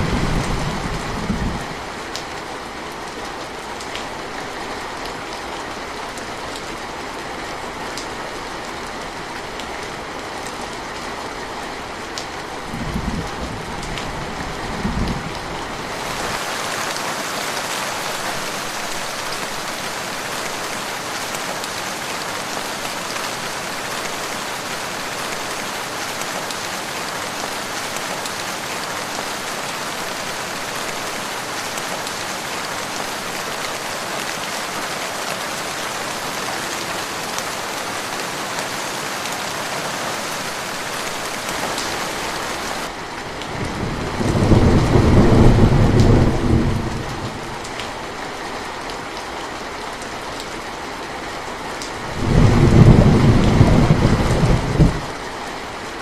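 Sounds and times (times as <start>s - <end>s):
low thunder rumble: 0.0s - 1.8s, 12.6s - 15.7s, 43.6s - 47.6s, 52.1s - 55.1s
hissy downpour: 0.0s - 56.0s
steady rain: 0.0s - 56.0s.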